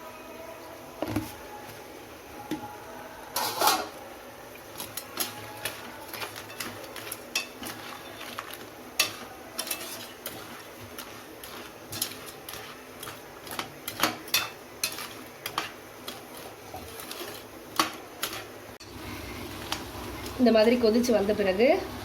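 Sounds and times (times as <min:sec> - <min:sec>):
faint sizzle of curry: 0:00.0 - 0:22.0
spoon clinking and scraping pan: 0:04.8 - 0:18.6.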